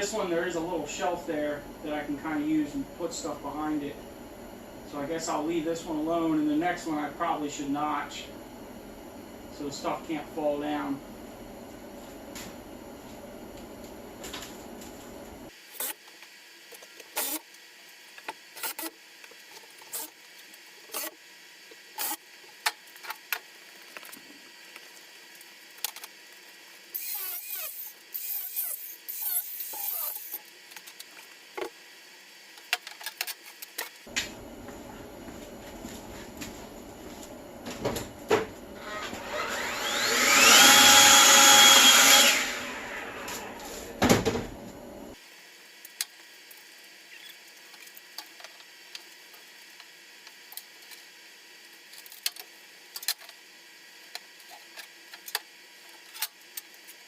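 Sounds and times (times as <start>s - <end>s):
power tool motor whining: 38.8s - 44.0s.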